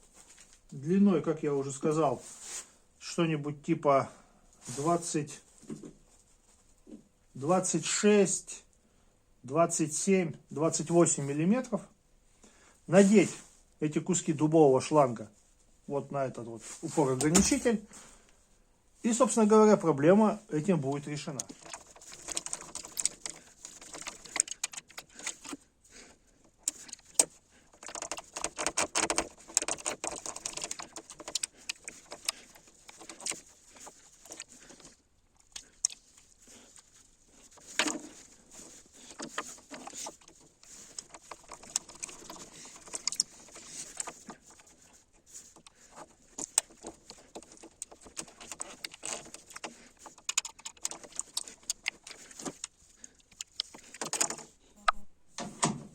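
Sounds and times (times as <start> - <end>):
rustling: 0.0 - 0.8, 1.9 - 3.0, 4.5 - 7.2, 14.8 - 55.9
small parts clicking and clinking: 20.9 - 25.6, 26.4 - 54.6.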